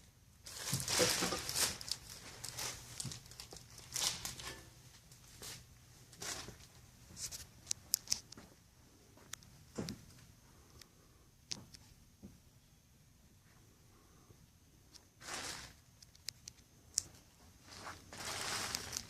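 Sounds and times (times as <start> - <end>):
scraping and rustling: 0.5 - 4.7, 15.2 - 15.8, 17.6 - 19.0.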